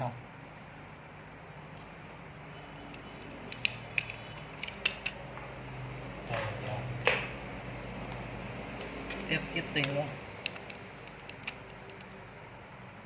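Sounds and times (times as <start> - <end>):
sharp clicks: 2.9 - 5.2, 8.8 - 12.2.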